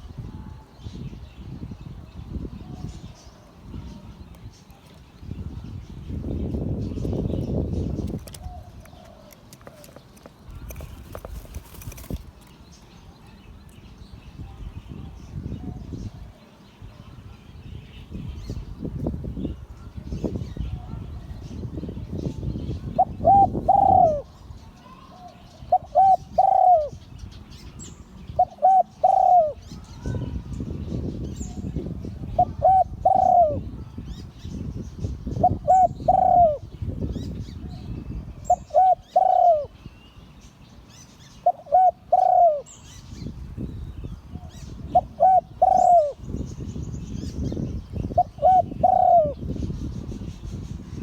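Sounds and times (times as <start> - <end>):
dove cooing: 8.0 - 12.3, 22.9 - 27.0, 28.4 - 30.2, 32.2 - 33.7, 35.4 - 36.7, 38.4 - 39.8, 41.4 - 42.7, 44.6 - 46.2, 48.1 - 49.4.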